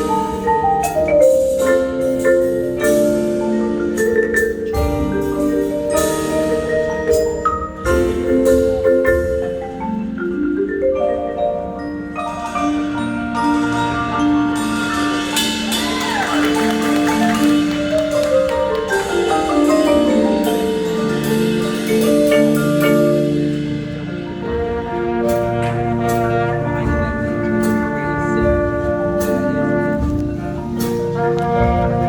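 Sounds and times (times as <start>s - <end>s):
marimba playing: 0.0s - 32.0s.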